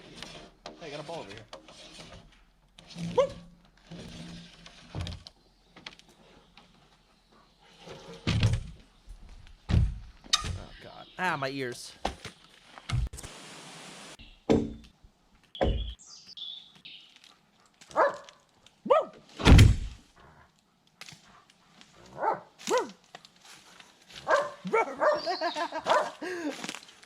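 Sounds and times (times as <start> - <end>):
dog barking: 17.9 - 19.2, 22.1 - 23.0, 24.2 - 25.3, 25.9 - 26.2.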